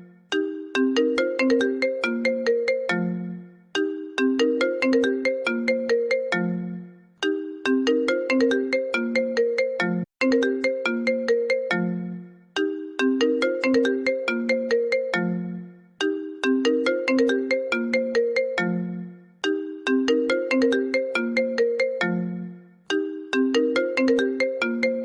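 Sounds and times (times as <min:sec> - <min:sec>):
phone ringtone melody: 0:00.0 - 0:25.0.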